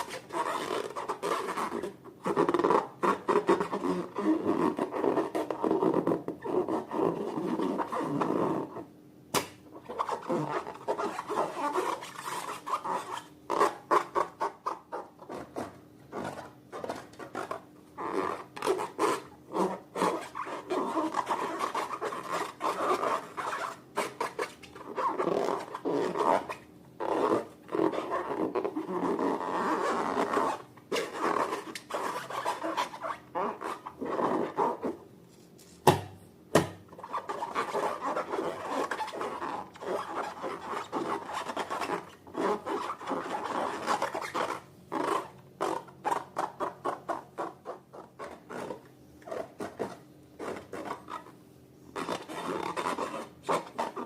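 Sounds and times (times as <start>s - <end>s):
sharp snaps: 9.3s - 9.6s.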